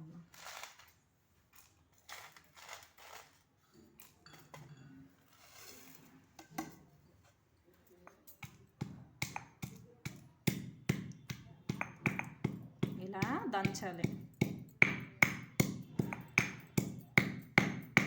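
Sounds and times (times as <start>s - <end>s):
pestle pounding: 8.4s - 18.0s.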